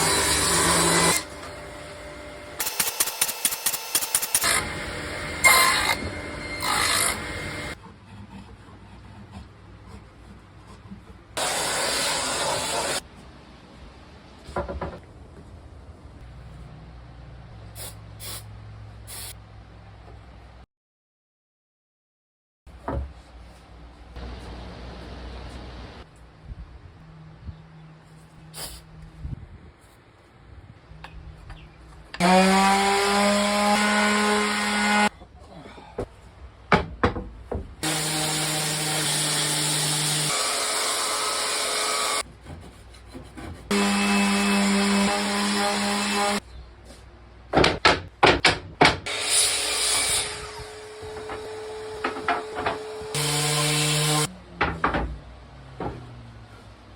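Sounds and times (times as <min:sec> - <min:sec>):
power tool running: 0:00.0 - 0:07.8, 0:52.8 - 0:54.3
scrape on wood: 0:42.3 - 0:43.7.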